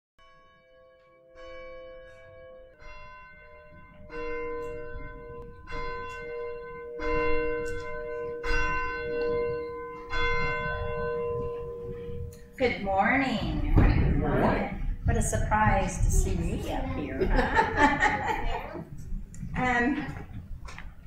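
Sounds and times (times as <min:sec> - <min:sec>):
church bell tolling: 0:00.2 - 0:16.2.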